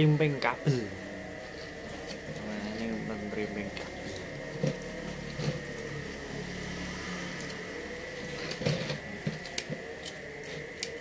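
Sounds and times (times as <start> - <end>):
electrical hum: 0.0 - 11.0
objects clicking and knocking: 8.2 - 11.0.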